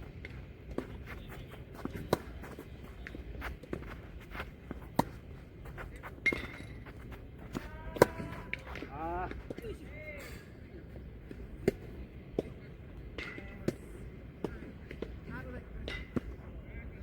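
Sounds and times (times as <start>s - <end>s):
footsteps on court: 0.0s - 9.8s
racket hitting tennis ball: 1.8s - 2.6s, 4.9s - 5.2s.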